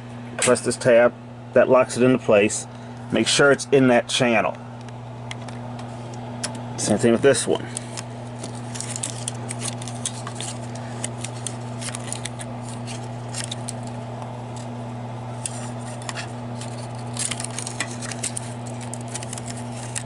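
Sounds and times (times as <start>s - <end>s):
steady low hum: 0.0s - 20.0s
clicks of film being handled: 7.7s - 14.7s, 15.4s - 20.0s.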